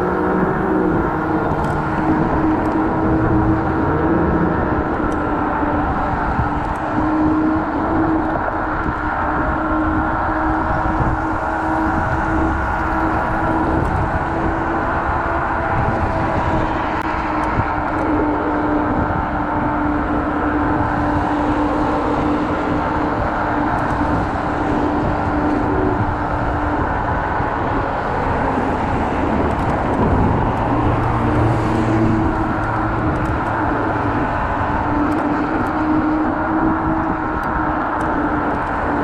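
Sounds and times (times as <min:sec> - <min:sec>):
continuous hum: 0:00.0 - 0:39.0
low hum of passing traffic: 0:00.0 - 0:39.0
wind and road rush: 0:00.0 - 0:39.0.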